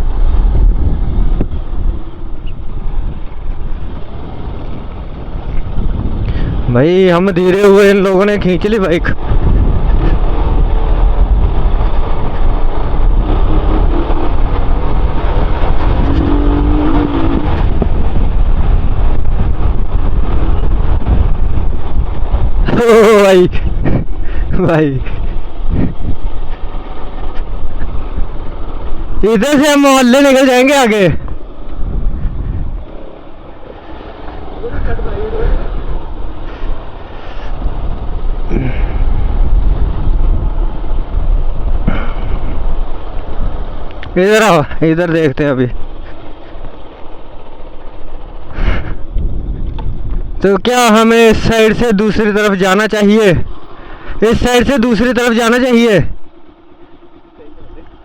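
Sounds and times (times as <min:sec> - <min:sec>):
wind rumble on microphone: 0:00.0 - 0:58.0
motorcycle engine running: 0:09.4 - 0:22.4.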